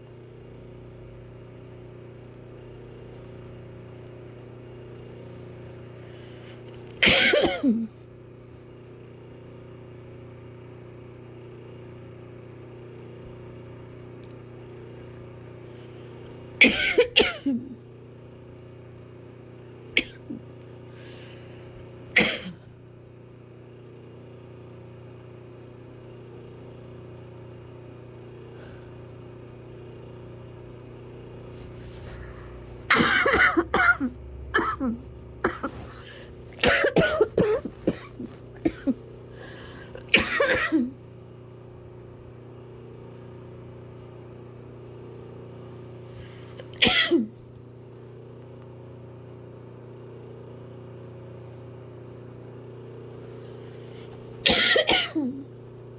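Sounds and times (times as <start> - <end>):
fan humming: 0.0 - 55.9
person coughing hard: 7.0 - 8.0, 16.6 - 17.8, 20.0 - 20.4, 22.1 - 22.7, 32.9 - 41.0, 46.6 - 47.3, 54.4 - 55.5.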